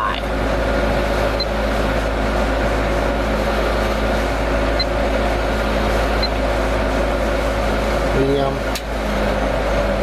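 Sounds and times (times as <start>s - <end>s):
electric fan motor humming: 0.0s - 10.0s.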